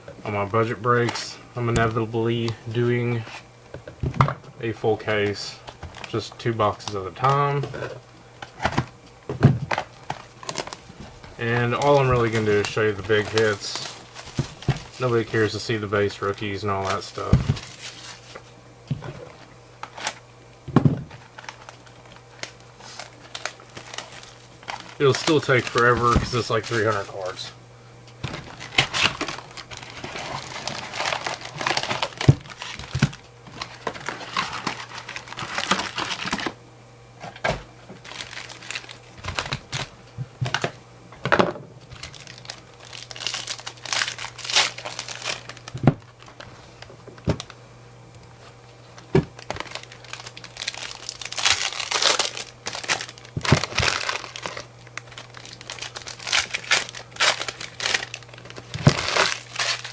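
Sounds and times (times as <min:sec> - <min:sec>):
low steady hum: 0:00.0 - 0:59.9
foil wrappers tearing and crinkling: 0:09.6 - 0:20.2, 0:21.1 - 0:27.5, 0:28.2 - 0:36.6, 0:38.0 - 0:40.7, 0:41.8 - 0:47.6, 0:48.2 - 0:59.9
cards being handled: 0:09.7 - 0:20.2, 0:21.2 - 0:27.4.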